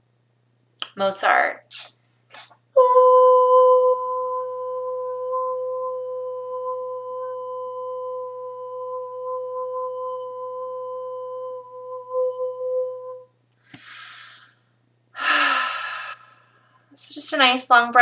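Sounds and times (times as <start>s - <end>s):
woman singing long note: 2.8s - 13.3s.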